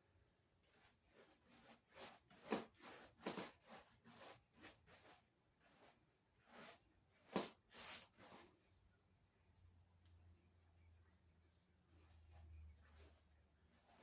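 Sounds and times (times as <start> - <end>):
hand rubbing glaze onto surface: 0.7 - 8.5.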